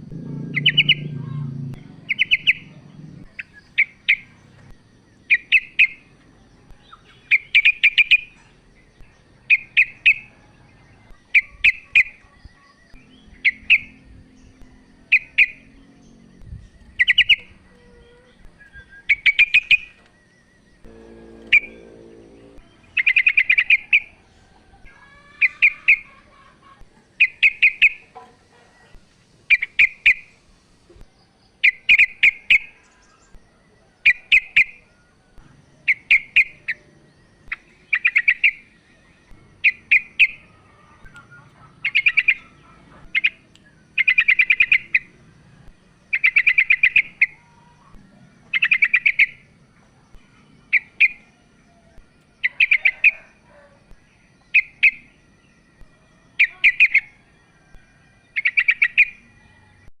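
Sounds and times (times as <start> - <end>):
bird chattering calls: 0.5 - 4.6.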